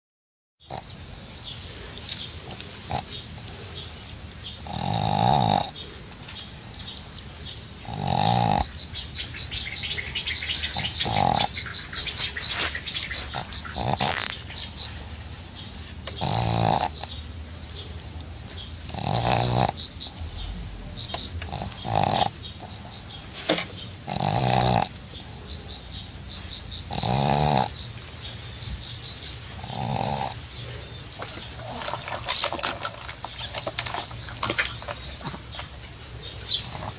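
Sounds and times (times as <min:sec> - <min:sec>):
dog snoring: 0:00.6 - 0:01.0, 0:02.4 - 0:06.0, 0:07.8 - 0:15.0, 0:15.6 - 0:17.2, 0:18.6 - 0:25.4, 0:26.8 - 0:27.9, 0:29.5 - 0:35.0, 0:36.5 - 0:36.9.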